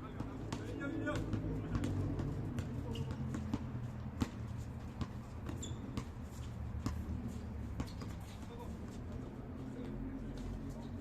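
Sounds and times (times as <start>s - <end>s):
basketball bouncing on court: 0.0s - 9.3s
shoe squeak: 2.6s - 3.6s, 4.3s - 8.7s.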